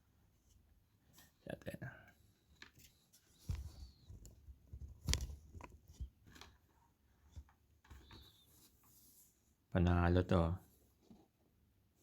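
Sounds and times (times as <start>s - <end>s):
soft taps and rustles: 2.6s - 9.0s.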